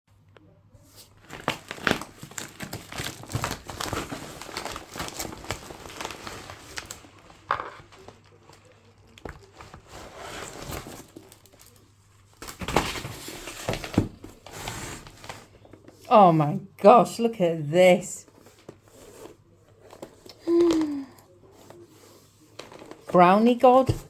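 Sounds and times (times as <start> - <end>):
packaging crinkling: 1.1 - 16.0.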